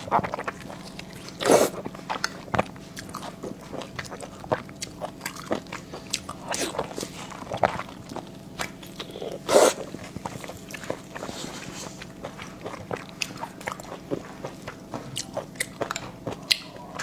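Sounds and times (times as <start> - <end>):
person chewing food: 0.0 - 17.0.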